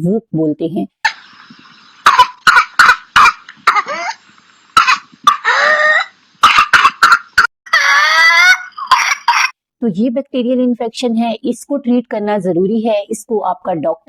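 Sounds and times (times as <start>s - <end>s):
rapid coughing: 2.0s - 4.2s, 4.8s - 7.5s, 8.8s - 9.6s.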